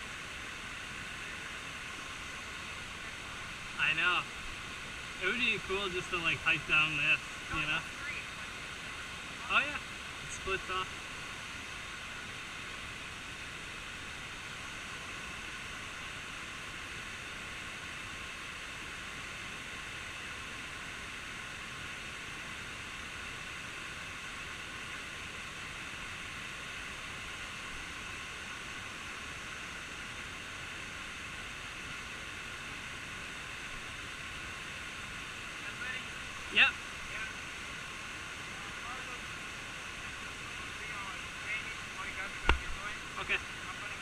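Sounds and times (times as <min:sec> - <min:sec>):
waterfall rushing: 0:00.0 - 0:44.0.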